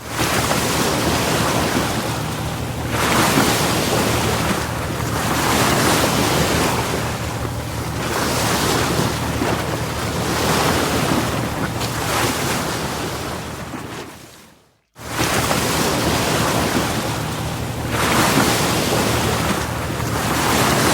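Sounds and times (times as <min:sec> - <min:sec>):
ocean waves breaking: 0:00.0 - 0:20.9.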